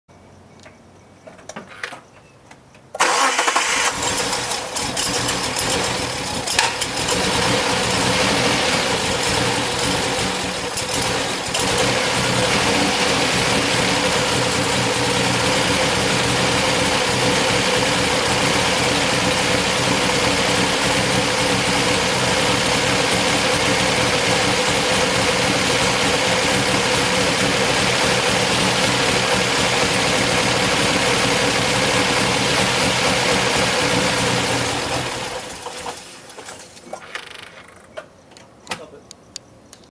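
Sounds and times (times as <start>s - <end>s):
engine clicking noise: 2.8s - 38.5s
car engine starting and idling: 2.9s - 37.7s.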